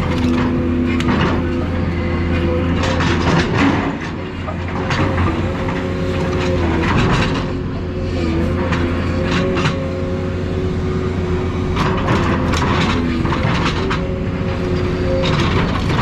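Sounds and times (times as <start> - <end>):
metal clanks and crunches: 0.0 - 1.7
machine engine and hydraulics whine: 0.0 - 16.0.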